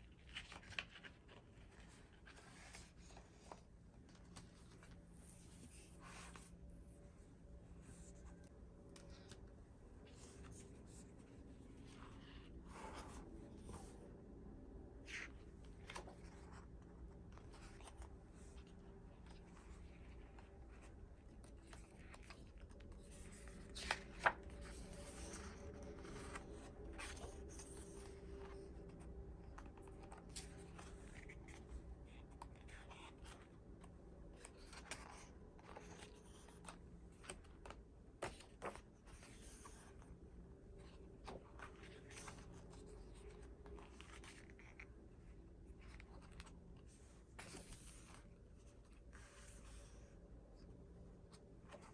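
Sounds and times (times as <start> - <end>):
paper and plastic rustling: 15.0 - 50.7.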